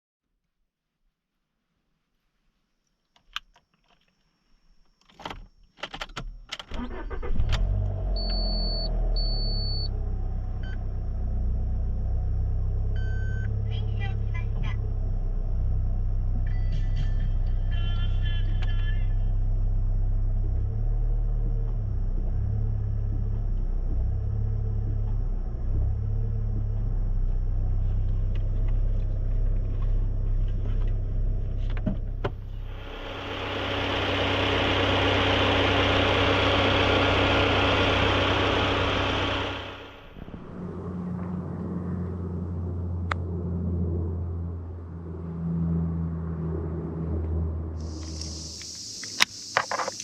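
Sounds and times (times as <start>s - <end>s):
car engine rumbling: 5.2s - 50.0s
loud rushing hiss: 47.8s - 50.0s
sharp clicks: 47.8s - 50.0s.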